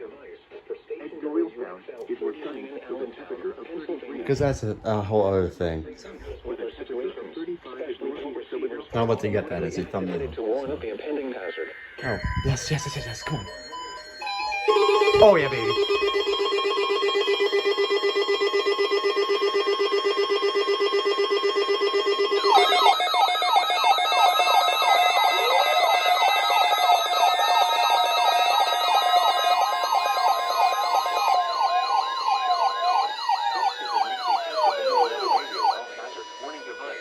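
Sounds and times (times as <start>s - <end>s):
rapidly pulsing beep tone: 11.6s - 37.0s
electronic sirens wailing: 11.7s - 37.0s.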